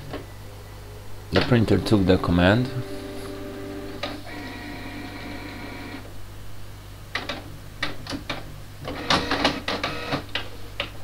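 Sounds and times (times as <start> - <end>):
printer motor whine: 2.8 - 6.1, 8.9 - 10.2
printer clicks and mechanical whirs: 7.2 - 10.9.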